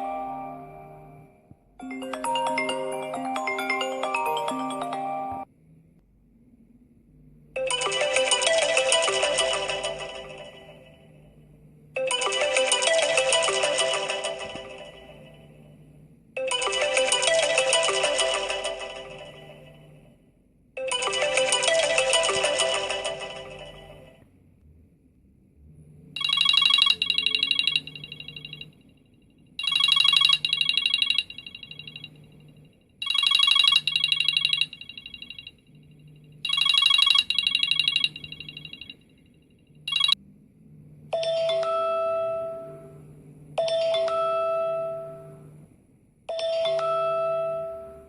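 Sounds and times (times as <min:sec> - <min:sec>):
chiming ringtone: 0:00.0 - 0:05.5, 0:07.6 - 0:11.2, 0:12.0 - 0:15.7, 0:16.4 - 0:20.0, 0:20.8 - 0:24.2, 0:26.2 - 0:28.8, 0:29.6 - 0:39.2, 0:39.9 - 0:40.2, 0:41.1 - 0:43.0, 0:43.6 - 0:45.5, 0:46.3 - 0:48.0
rapid trilling ringtone: 0:00.0 - 0:05.5, 0:07.6 - 0:11.2, 0:12.0 - 0:15.7, 0:16.4 - 0:20.0, 0:20.8 - 0:24.2, 0:26.2 - 0:28.8, 0:29.6 - 0:39.2, 0:39.9 - 0:40.2, 0:41.2 - 0:43.0, 0:43.6 - 0:45.4, 0:46.3 - 0:48.0.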